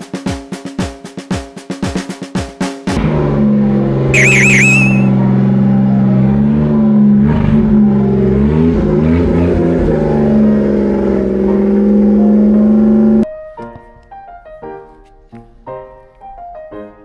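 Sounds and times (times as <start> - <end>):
van engine idling and revving: 3.0 - 13.4.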